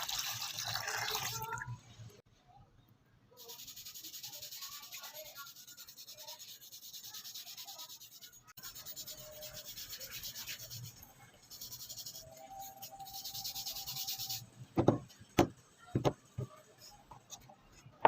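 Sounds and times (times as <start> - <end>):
hand sanding strokes: 3.4 - 14.4.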